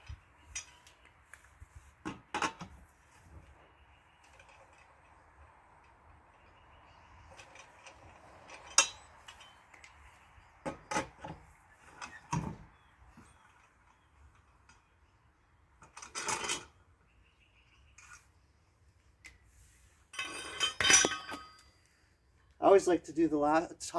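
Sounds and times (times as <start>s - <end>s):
metal clinks and knocks: 20.1s - 21.9s.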